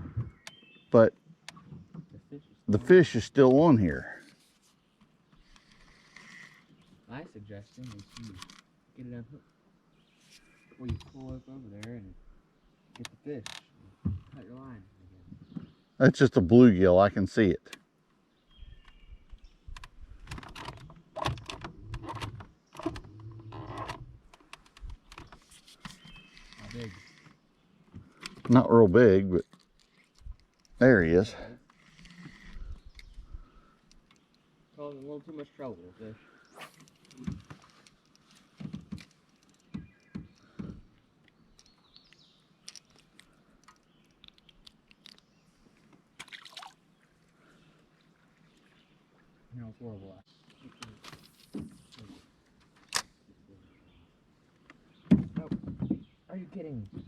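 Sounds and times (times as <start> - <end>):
fishing gear clicks and knocks: 7.7 - 8.7, 13.0 - 14.7, 19.7 - 28.7, 29.4 - 35.2, 36.4 - 46.7.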